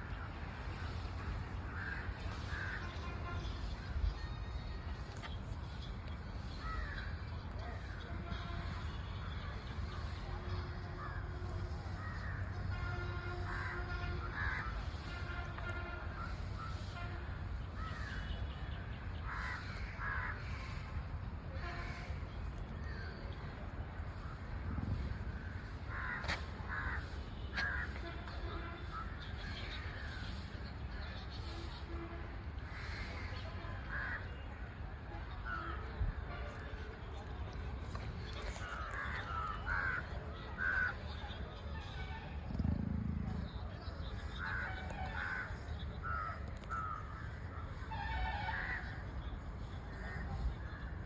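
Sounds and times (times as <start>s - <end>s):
steady low rumble: 0.0s - 30.8s, 33.8s - 47.9s
harsh cawing bird calls: 1.7s - 3.4s, 6.5s - 7.2s, 13.3s - 15.1s, 19.2s - 21.0s, 25.4s - 30.4s, 32.7s - 34.4s, 38.7s - 41.2s, 43.4s - 47.7s
low rumble: 42.2s - 46.2s.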